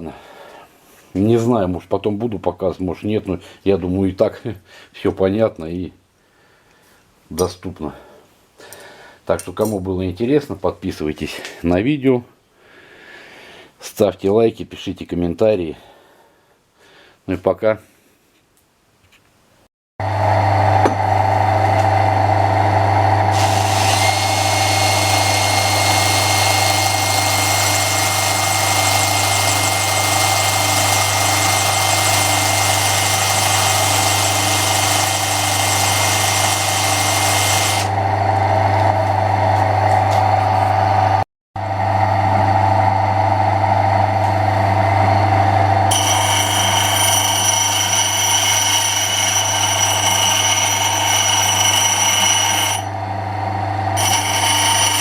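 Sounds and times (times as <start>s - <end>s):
machine hum and whir: 20.0s - 55.0s.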